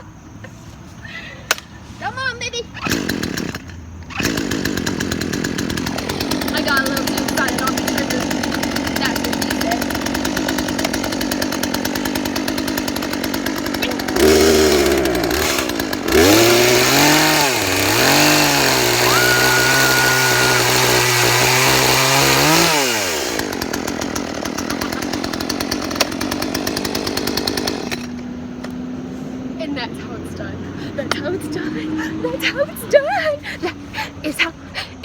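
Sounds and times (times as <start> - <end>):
chainsaw idling and revving: 2.7 - 35.0.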